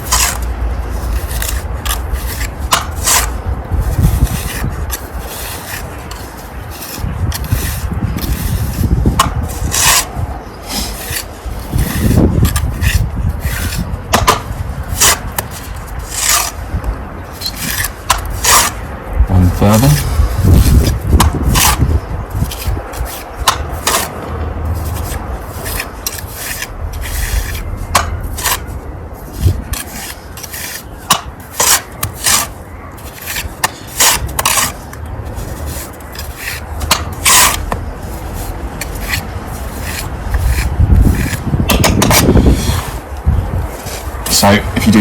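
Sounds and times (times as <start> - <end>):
trowel scraping mortar: 0.0 - 16.6, 17.3 - 45.0
low rumble: 24.1 - 29.8.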